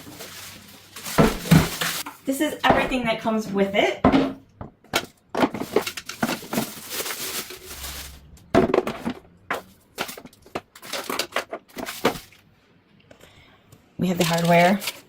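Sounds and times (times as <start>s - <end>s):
plastic packaging rustling: 0.0s - 2.8s, 5.0s - 12.5s, 14.2s - 15.0s
hard plastic pieces clacking: 4.9s - 7.5s, 8.7s - 12.4s, 14.2s - 15.0s.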